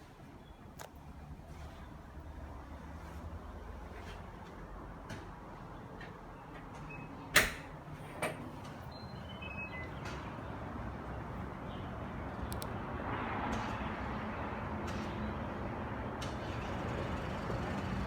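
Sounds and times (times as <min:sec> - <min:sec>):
highway traffic rumble: 0:09.7 - 0:18.0.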